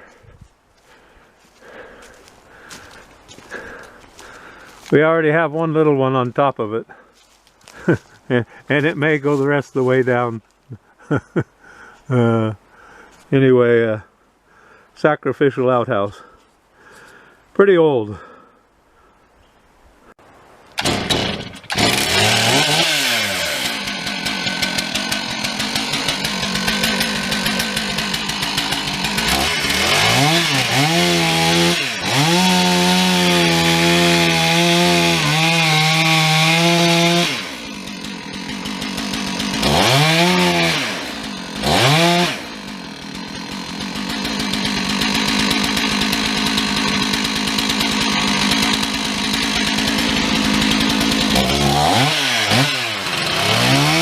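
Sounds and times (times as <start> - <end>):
chainsaw cutting and revving: 0.8 - 4.9, 7.2 - 8.2, 20.8 - 54.0.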